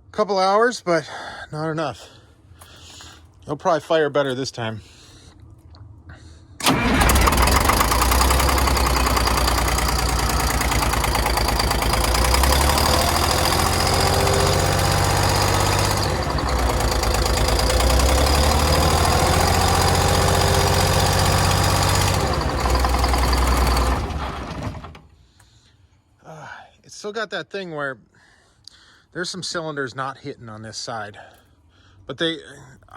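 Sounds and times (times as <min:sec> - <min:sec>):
diesel engine running: 0:06.6 - 0:25.1.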